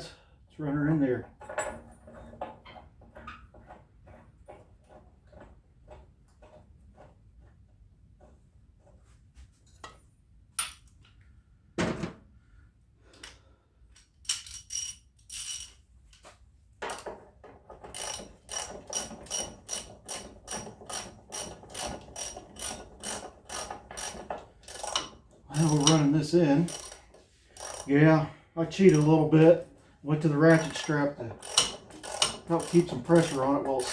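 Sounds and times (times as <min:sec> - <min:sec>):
metal knocks and clicks: 0:30.5 - 0:33.9
socket ratchet clicking: 0:31.4 - 0:33.9.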